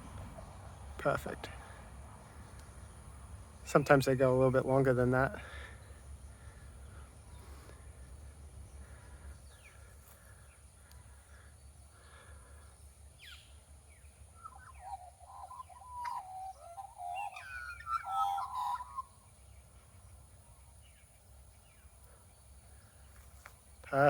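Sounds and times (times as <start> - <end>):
magpie warbling: 15.5 - 19.0.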